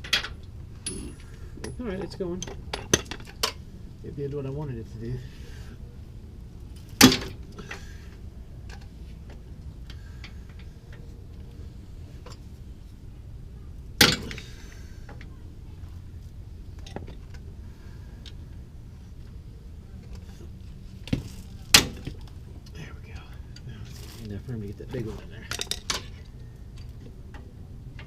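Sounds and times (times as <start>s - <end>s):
sharp metal clanks: 0.0s - 3.6s, 14.0s - 14.5s.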